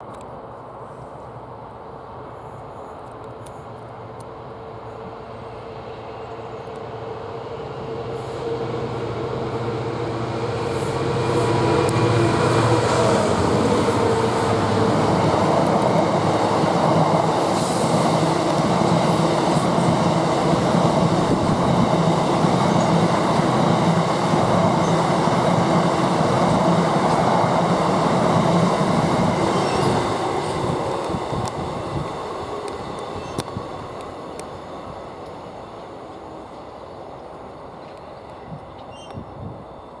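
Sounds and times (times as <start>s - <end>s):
diesel locomotive engine running: 7.5s - 35.0s.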